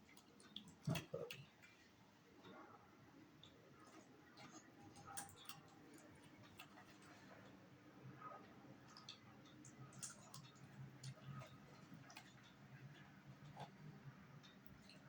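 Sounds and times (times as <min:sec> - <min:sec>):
faint low hum: 0:00.0 - 0:15.0
dog eating soft food: 0:03.4 - 0:15.0.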